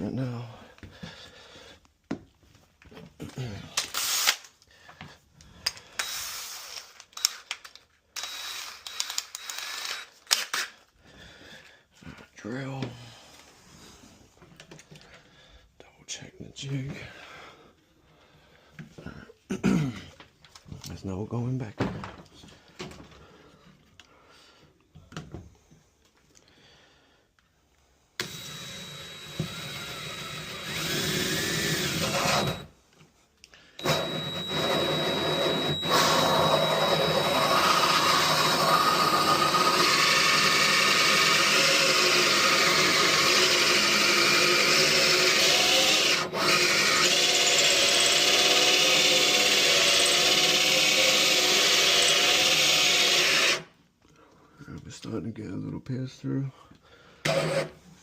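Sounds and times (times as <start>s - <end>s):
power drill boring into wood: 3.9s - 4.5s, 6.0s - 10.8s, 28.2s - 32.7s, 33.8s - 53.7s, 57.2s - 57.8s.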